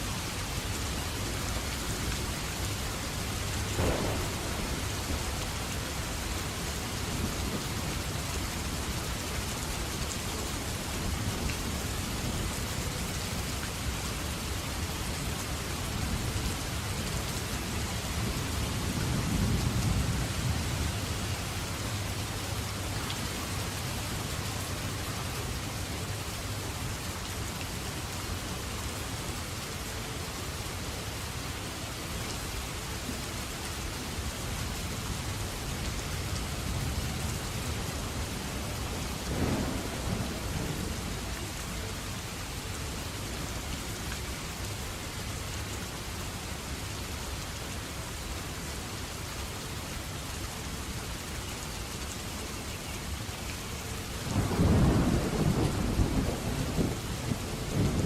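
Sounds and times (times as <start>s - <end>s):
steady rain falling: 0.0s - 58.0s
low rumble of thunder: 3.4s - 13.4s, 15.2s - 22.7s, 36.2s - 42.2s, 54.2s - 58.0s.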